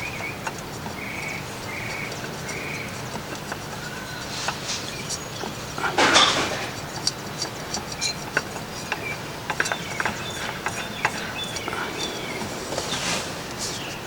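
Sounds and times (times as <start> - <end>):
light metallic clicks and scrapes: 0.0 - 14.0
short rustle: 3.9 - 6.9, 10.4 - 14.0.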